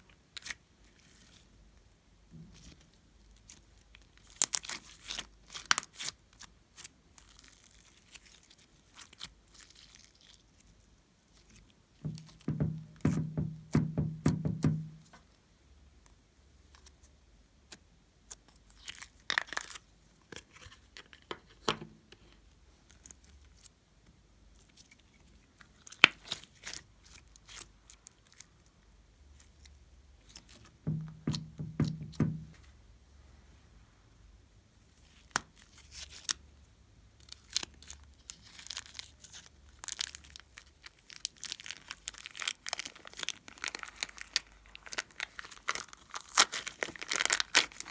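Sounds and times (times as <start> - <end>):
slime popping and crackling: 38.4 - 47.9.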